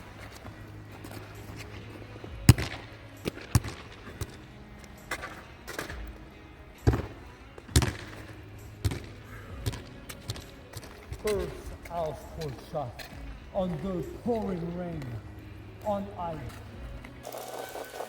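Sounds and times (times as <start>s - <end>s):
basketball bouncing on hard surface: 2.4s - 4.4s, 6.8s - 11.4s.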